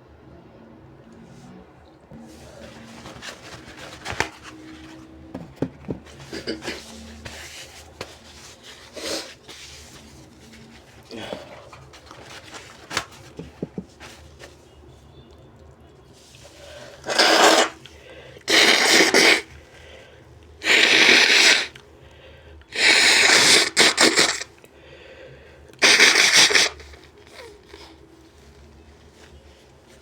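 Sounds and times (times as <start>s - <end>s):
man blasting air through nose: 16.8s - 19.5s, 20.6s - 21.8s, 22.7s - 24.5s, 25.8s - 28.0s.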